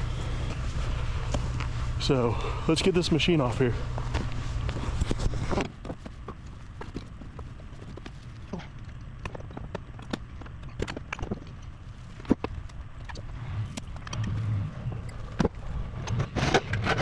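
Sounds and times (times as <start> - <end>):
diesel engine running low: 0.0 - 17.0.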